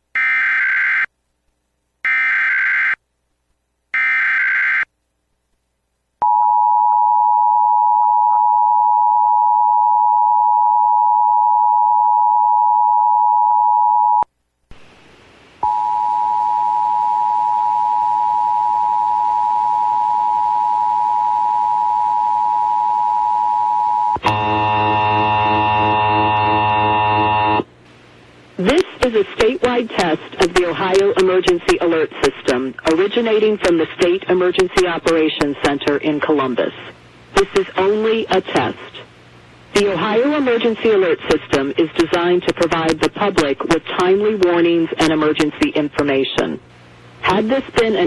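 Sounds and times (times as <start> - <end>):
harsh buzzing tone: 15.6 - 29.1.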